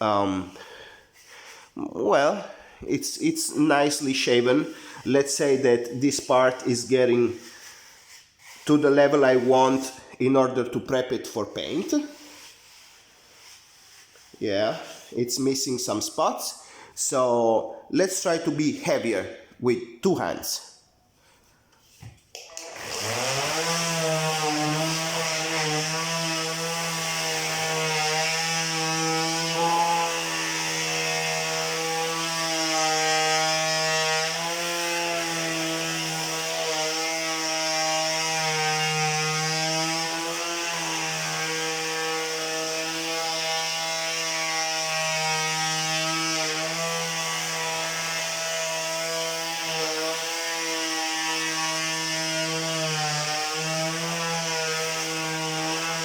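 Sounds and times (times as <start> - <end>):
sandpaper hissing on wood: 0.5 - 1.8, 3.9 - 10.0, 11.8 - 15.4
palm sander motor whine: 22.6 - 32.1.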